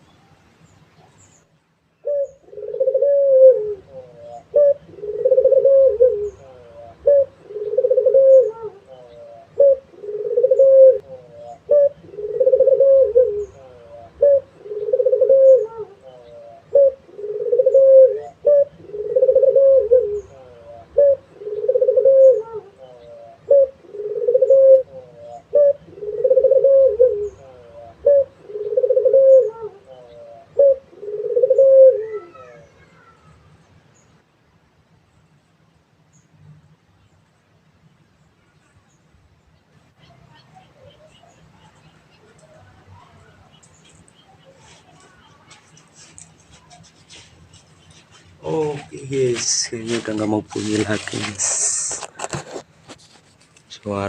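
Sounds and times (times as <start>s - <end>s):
dove cooing: 2.0s - 33.3s, 40.3s - 52.0s.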